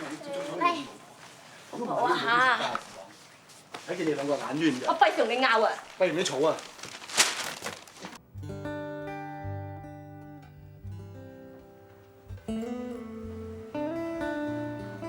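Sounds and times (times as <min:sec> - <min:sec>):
acoustic guitar chords: 0:08.2 - 0:15.0.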